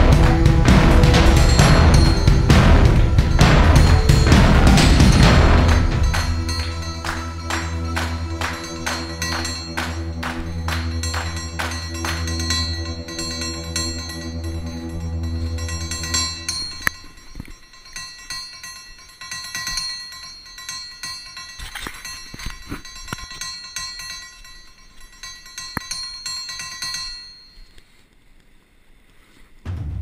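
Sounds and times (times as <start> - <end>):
loud drum-led music: 0.0 - 12.3, 29.7 - 30.0
bell-like tones: 0.0 - 27.8.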